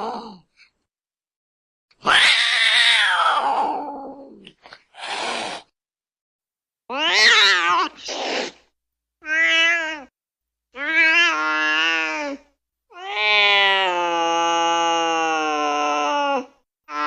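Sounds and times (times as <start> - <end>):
cat screeching and yowling: 2.0 - 4.4, 6.9 - 8.6, 9.2 - 10.1, 10.8 - 17.0
cat hissing: 4.7 - 5.7, 7.5 - 8.7.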